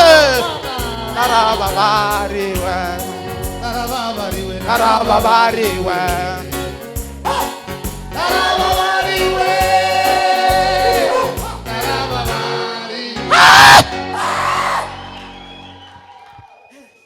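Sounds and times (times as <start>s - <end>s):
congregation singing: 0.0s - 15.8s
steady drum beat: 0.4s - 11.9s.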